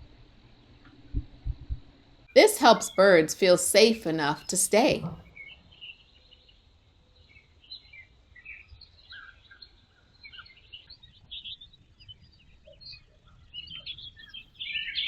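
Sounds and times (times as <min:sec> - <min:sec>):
low background noise: 0:00.0 - 0:08.4.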